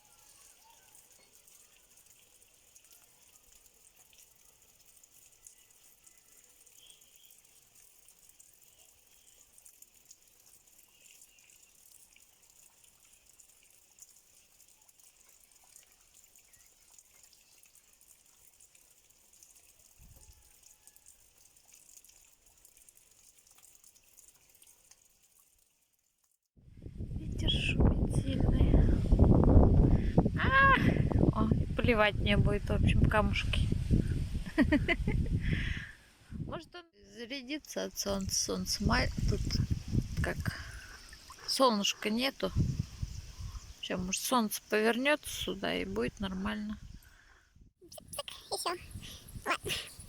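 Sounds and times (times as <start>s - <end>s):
faint bird chirps: 0.0s - 1.9s, 5.3s - 7.7s
water dripping and trickling: 0.0s - 26.5s, 37.5s - 50.0s.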